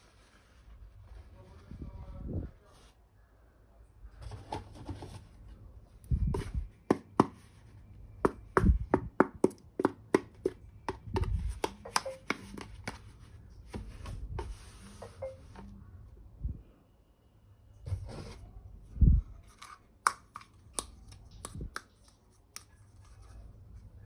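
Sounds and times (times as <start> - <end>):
soft rustles: 0.0 - 3.0.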